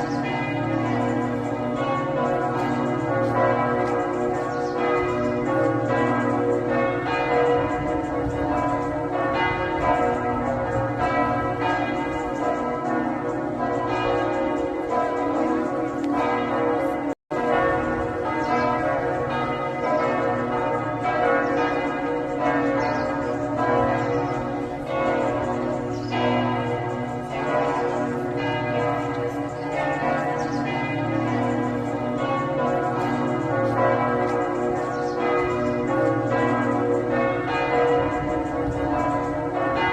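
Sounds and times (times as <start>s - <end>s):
church bells ringing: 0.0s - 39.9s.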